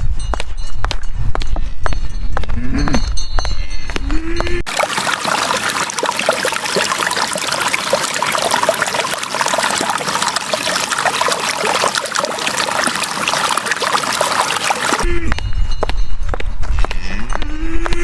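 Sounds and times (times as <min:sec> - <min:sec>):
water trickling and splashing: 0:04.7 - 0:15.1.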